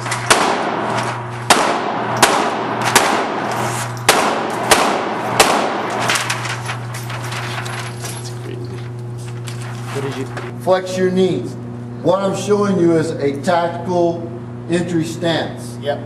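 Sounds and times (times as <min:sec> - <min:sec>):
steady low hum: 0:00.0 - 0:16.0
echoing gunshots: 0:00.1 - 0:06.2.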